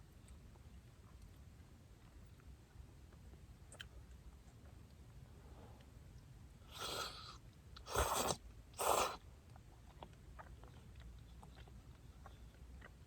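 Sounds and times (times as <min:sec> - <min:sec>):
person slurping hot food: 0:06.7 - 0:09.2.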